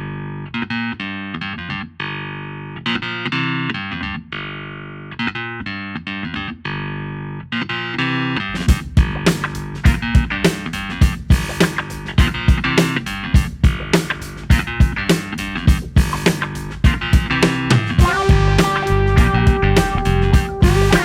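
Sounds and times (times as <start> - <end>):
guitar picking ringing notes: 0.0 - 21.0
drums: 8.5 - 21.0.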